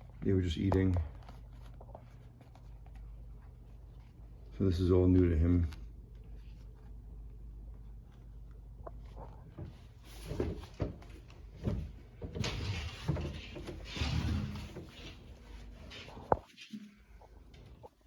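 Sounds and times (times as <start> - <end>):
scraping and rustling: 5.8 - 18.0.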